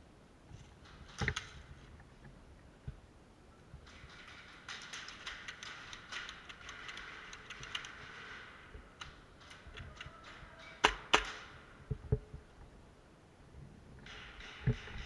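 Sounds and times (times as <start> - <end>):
airsoft guns firing: 3.9 - 11.8.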